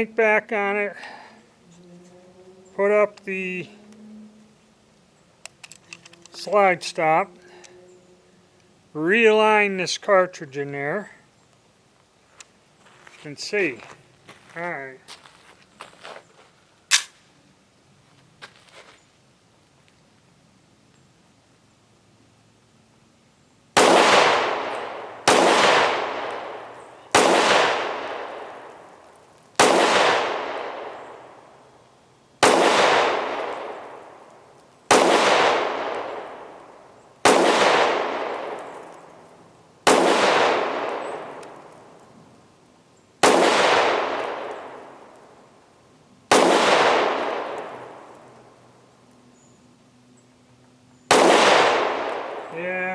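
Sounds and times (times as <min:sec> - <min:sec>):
pistol shots with echo: 0:23.8 - 0:28.8, 0:29.6 - 0:31.4, 0:32.4 - 0:34.2, 0:34.9 - 0:36.6, 0:37.2 - 0:38.9, 0:39.8 - 0:41.6, 0:43.2 - 0:45.0, 0:46.3 - 0:48.2, 0:51.1 - 0:52.6.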